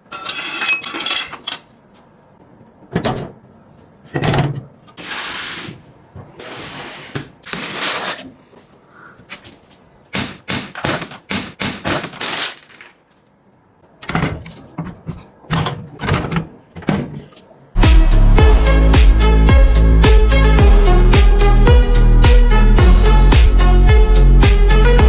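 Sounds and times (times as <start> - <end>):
rustling and scraping: 3.0 - 10.0, 14.1 - 17.7.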